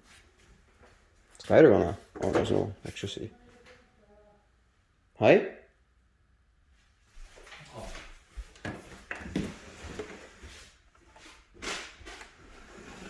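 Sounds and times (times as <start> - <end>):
drawers being opened: 2.1 - 3.0, 11.6 - 13.0.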